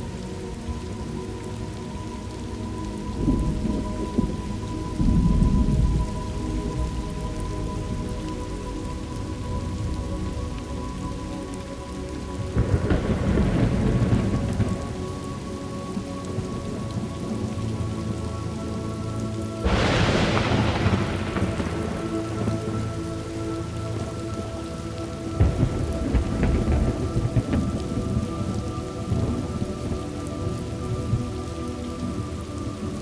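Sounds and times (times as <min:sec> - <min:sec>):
steady rain: 0:00.0 - 0:33.0
low rumble of thunder: 0:02.8 - 0:11.5, 0:12.4 - 0:18.2, 0:19.6 - 0:33.0
thunderclap: 0:03.2 - 0:08.1, 0:12.6 - 0:15.1, 0:19.6 - 0:24.5, 0:25.3 - 0:31.4.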